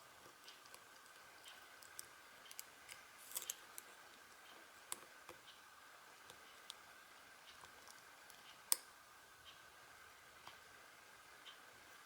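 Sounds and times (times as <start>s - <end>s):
lock pick clicking and scraping: 1.8s - 3.9s.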